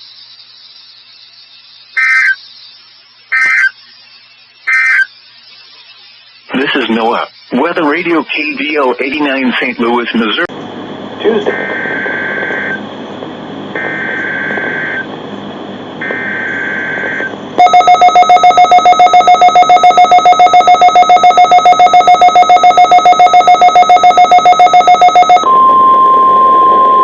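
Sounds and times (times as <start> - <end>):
screeching digital data bursts: 0.0 - 10.5, 11.2 - 12.8, 13.8 - 15.1, 16.0 - 25.6
pulsing buzzing alarm tone: 1.9 - 2.5, 3.3 - 3.8, 4.6 - 6.2, 11.5 - 12.8, 13.7 - 15.1, 16.0 - 27.0
steady warning tone: 1.9 - 2.6, 3.3 - 10.5, 11.2 - 27.0.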